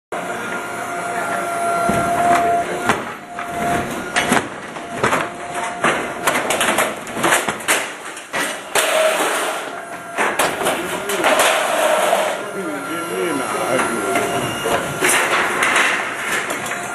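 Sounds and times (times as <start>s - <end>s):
excavator machine noise: 0.2s - 16.9s
steady whine: 0.2s - 16.9s
sharp knocks and cracks: 1.9s - 11.7s.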